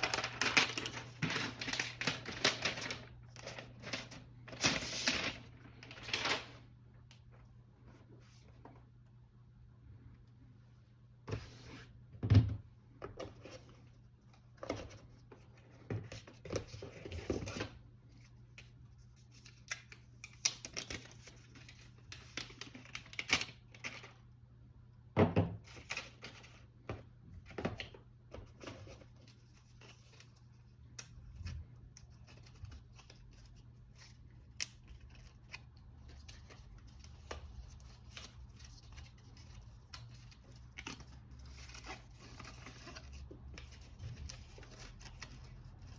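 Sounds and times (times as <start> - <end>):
paper and cardboard rustling: 0.0 - 6.6, 27.4 - 45.9.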